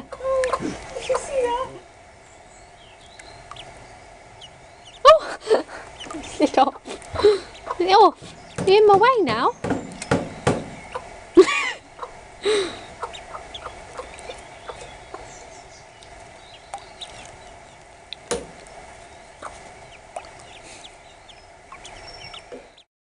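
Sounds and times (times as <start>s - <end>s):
hen clucking: 0.0s - 1.9s, 2.6s - 22.9s
ducklings peeping: 0.0s - 22.9s
sharp knock: 8.6s - 10.8s.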